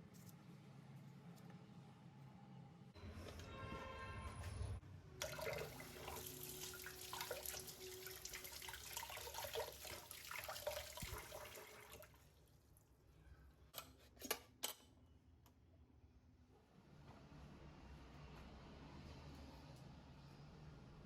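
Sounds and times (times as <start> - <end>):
tap water running into sink: 5.2 - 12.2.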